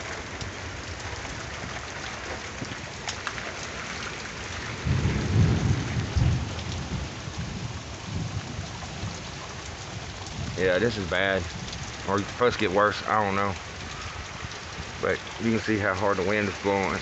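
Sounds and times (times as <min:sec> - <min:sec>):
heavy rain falling: 0:00.0 - 0:17.0
thunder rumbling: 0:03.7 - 0:17.0.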